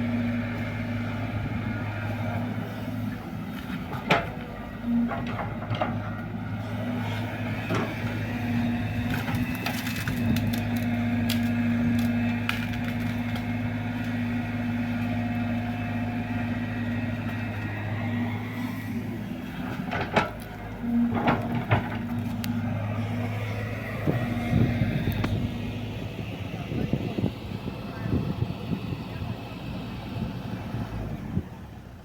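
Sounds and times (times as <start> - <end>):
excavator diesel engine running: 0.0 - 32.0
sharp knocks and cracks: 9.0 - 14.2, 19.8 - 22.6.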